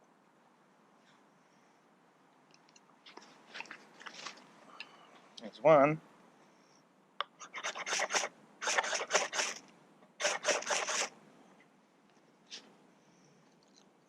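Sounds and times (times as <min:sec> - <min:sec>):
ferro rod rasping scrapes: 0:07.4 - 0:09.6, 0:10.2 - 0:11.1.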